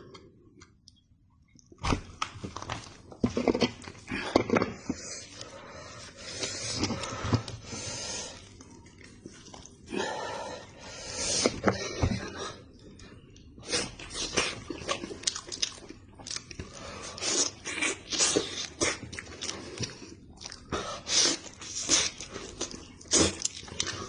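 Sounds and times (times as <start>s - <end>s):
chewing and lip-smacking: 12.8s - 20.7s, 21.3s - 24.0s.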